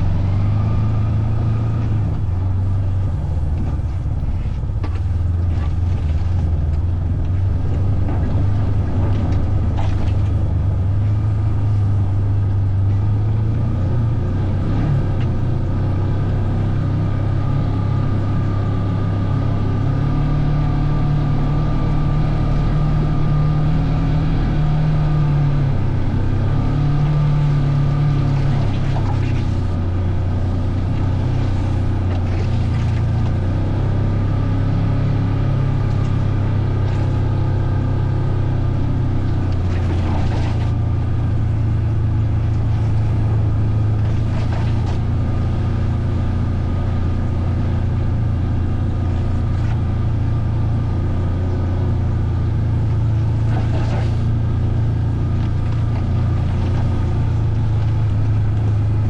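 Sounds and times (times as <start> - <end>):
vehicle engine droning: 0.0 - 59.0.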